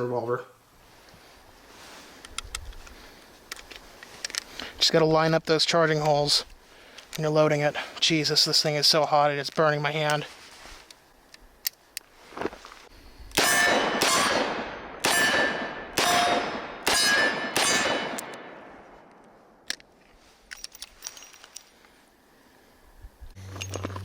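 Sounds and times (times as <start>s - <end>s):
loud revolver shots: 13.4s - 18.8s.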